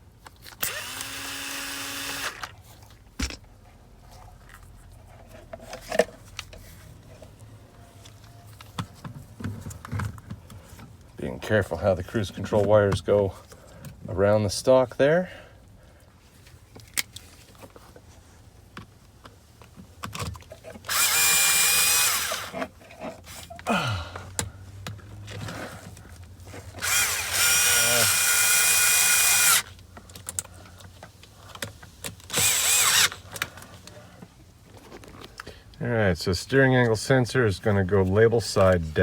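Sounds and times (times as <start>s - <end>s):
power drill driving screws: 0.6s - 2.5s, 20.8s - 22.7s, 26.8s - 29.7s, 32.3s - 33.4s.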